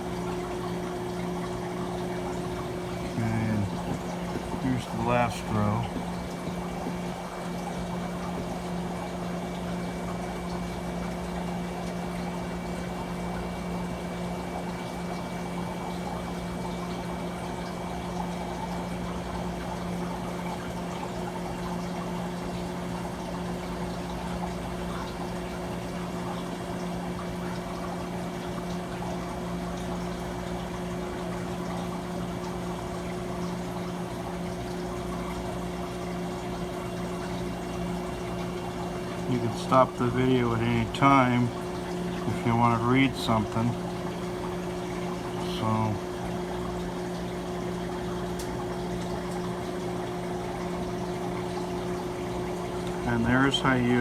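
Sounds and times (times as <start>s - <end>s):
ice machine humming: 0.0s - 54.0s
trickling water: 0.0s - 54.0s.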